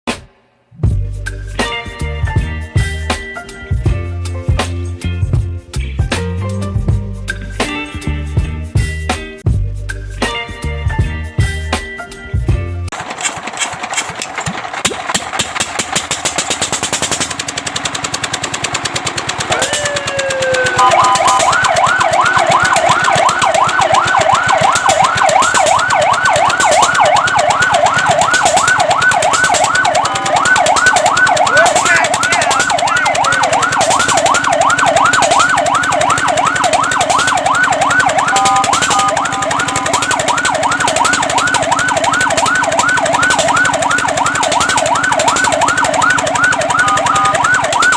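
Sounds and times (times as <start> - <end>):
rapid rattling pulse: 12.9 - 47.9
fire truck siren yelping: 16.0 - 47.9
short falling tone: 20.4 - 21.7.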